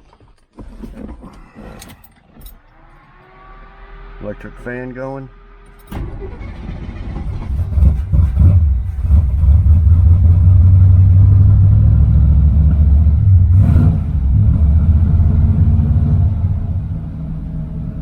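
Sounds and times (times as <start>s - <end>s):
car engine rumbling: 0.6s - 18.0s.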